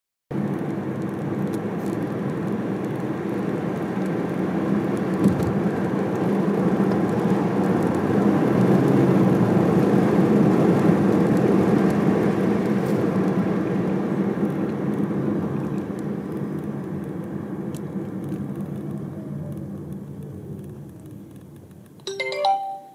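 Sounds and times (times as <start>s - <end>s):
car engine and tyre noise: 0.3s - 22.0s.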